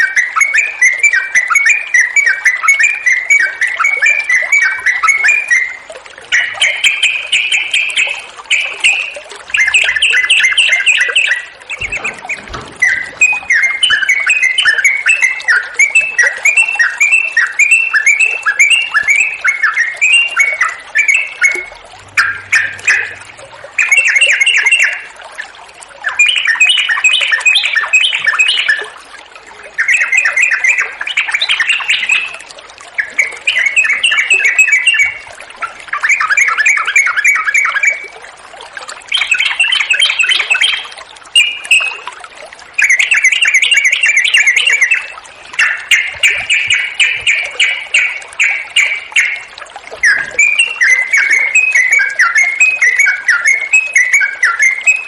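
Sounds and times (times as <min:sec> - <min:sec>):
flowing water: 0:00.0 - 0:55.0
bulbul singing chattering notes: 0:03.1 - 0:25.2, 0:42.8 - 0:55.0.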